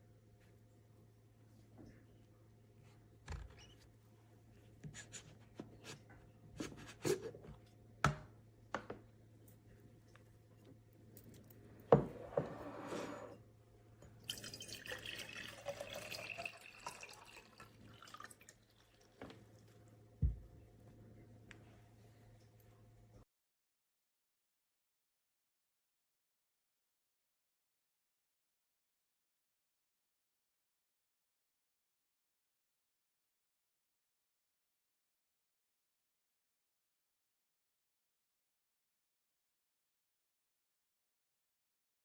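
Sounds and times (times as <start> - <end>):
water dripping: 14.2 - 19.8
water running or splashing: 14.3 - 19.7.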